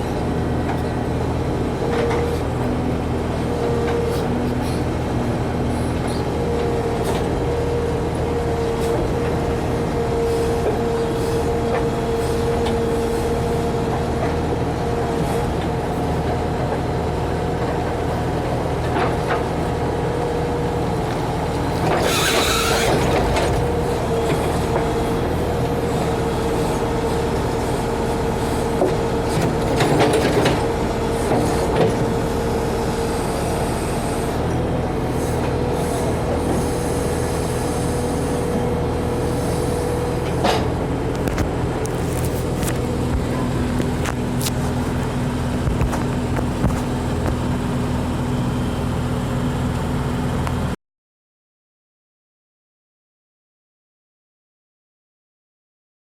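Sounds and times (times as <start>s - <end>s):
diesel engine running with whine: 0.0s - 50.8s.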